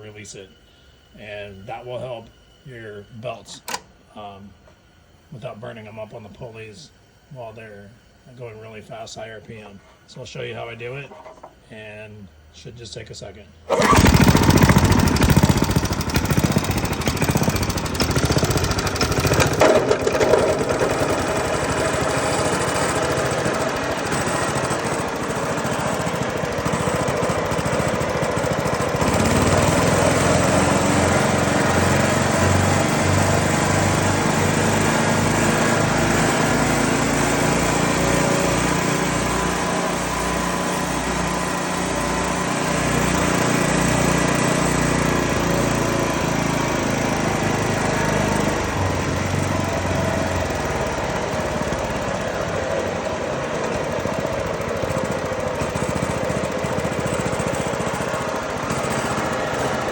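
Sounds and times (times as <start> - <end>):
small engine running a wood chipper: 13.7 - 59.9.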